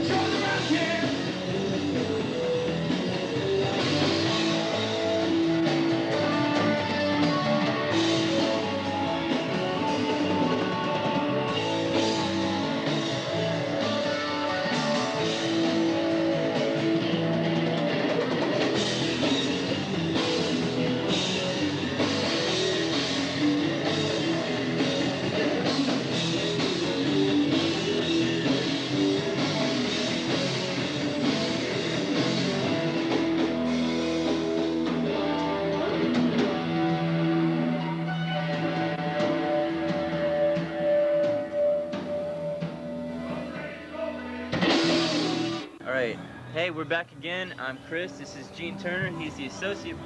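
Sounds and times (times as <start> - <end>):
instrumental rock band: 0.0 - 50.0.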